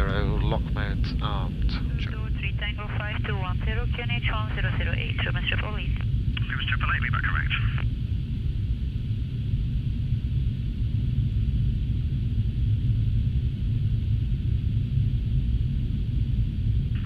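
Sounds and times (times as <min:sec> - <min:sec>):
jet cockpit engine rumble: 0:00.0 - 0:17.0.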